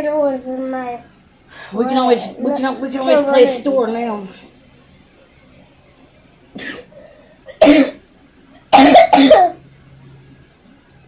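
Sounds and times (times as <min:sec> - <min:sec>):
person coughing: 0:06.6 - 0:06.9, 0:07.5 - 0:08.0, 0:08.7 - 0:09.6.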